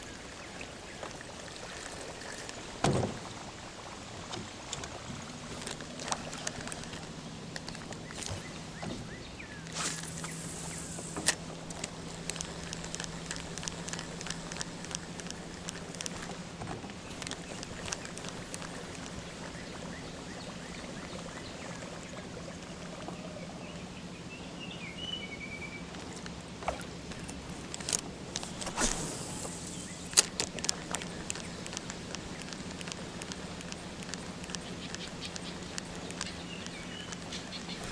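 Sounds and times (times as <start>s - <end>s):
short rush of noise: 9.7s - 11.2s, 28.6s - 30.1s
light clicks: 11.2s - 19.2s, 30.0s - 37.9s
bird chirp: 23.2s - 25.9s, 34.6s - 37.9s.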